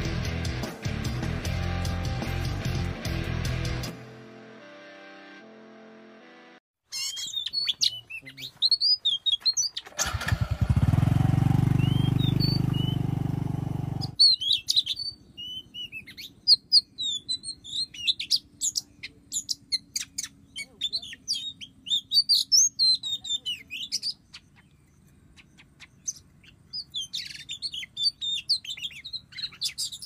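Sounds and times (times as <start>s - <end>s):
birds whistling and chirping: 6.9s - 9.9s, 11.6s - 13.3s, 13.9s - 30.0s
loud engine running: 10.0s - 14.2s.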